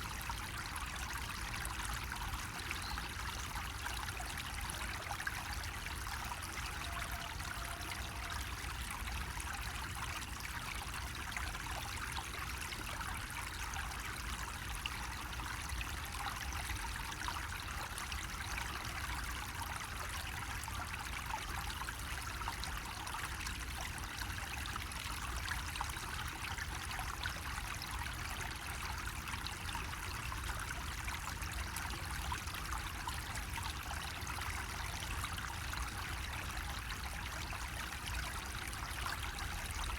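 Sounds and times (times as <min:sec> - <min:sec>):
water trickling from spout: 0:00.0 - 0:39.9.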